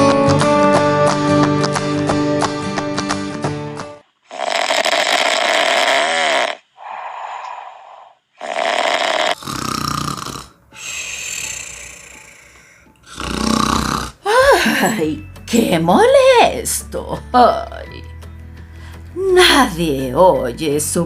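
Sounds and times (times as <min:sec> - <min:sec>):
person snoring loudly: 0:04.3 - 0:14.3.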